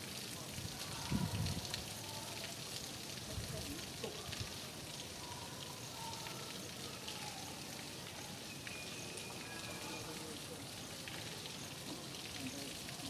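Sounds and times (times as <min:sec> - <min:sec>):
heavy rain falling: 0:00.0 - 0:13.0.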